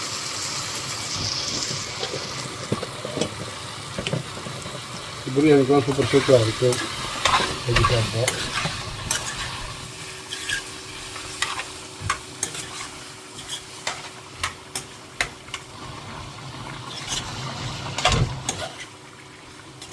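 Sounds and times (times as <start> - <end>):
food sizzling in a pan: 0.0 - 19.9
spoon scraping a pan: 5.8 - 14.9, 16.8 - 17.4, 18.0 - 19.0.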